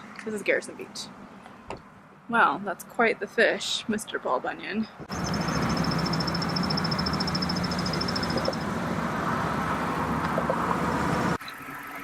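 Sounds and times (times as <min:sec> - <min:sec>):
vehicle road noise: 0:00.0 - 0:11.4
fast high ticking: 0:05.1 - 0:08.7.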